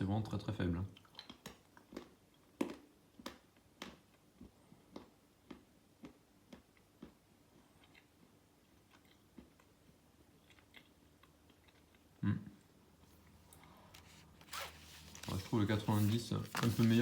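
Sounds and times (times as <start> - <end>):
person chewing and sucking: 4.8 - 12.2.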